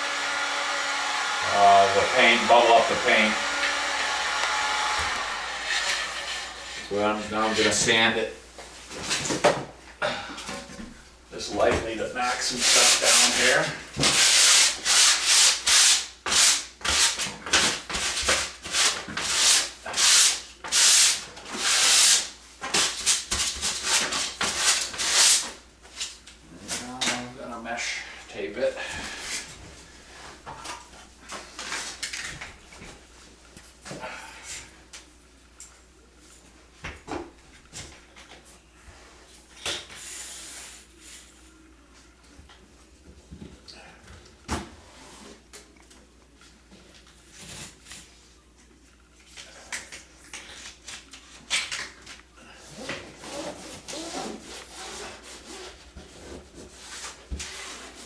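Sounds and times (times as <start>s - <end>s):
sanding strokes on ceiling: 0.0s - 7.9s, 12.2s - 25.6s, 52.6s - 58.0s
hissing rub: 1.6s - 7.7s.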